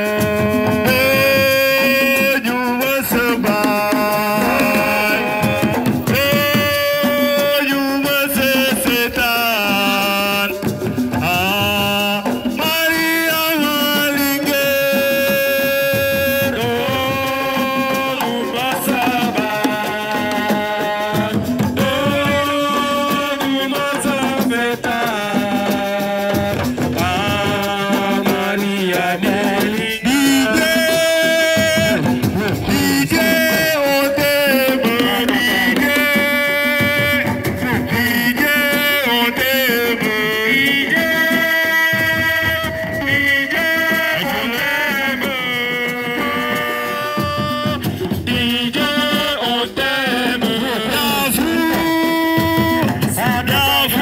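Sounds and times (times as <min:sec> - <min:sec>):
sung melody with sliding notes: 0:00.0 - 0:08.0
drums and percussion: 0:00.0 - 0:54.0.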